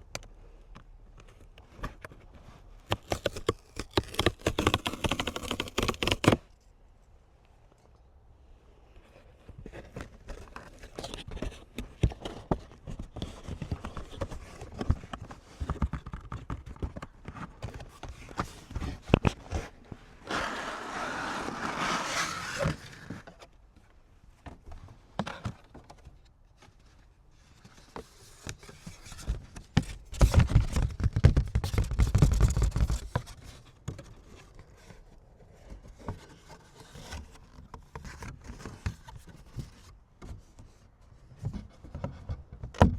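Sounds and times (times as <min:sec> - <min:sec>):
cards tapping and scraping: 0:02.8 - 0:06.4, 0:27.7 - 0:34.3.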